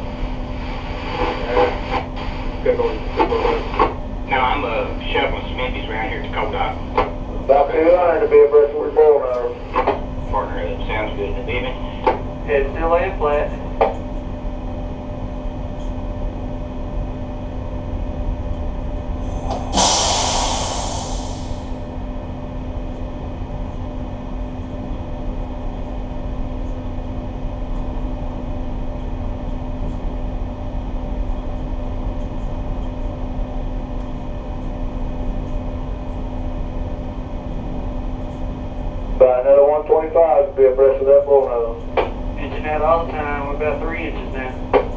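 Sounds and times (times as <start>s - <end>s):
loud hiss: 19.2s - 21.8s
diesel engines droning: 19.2s - 21.9s.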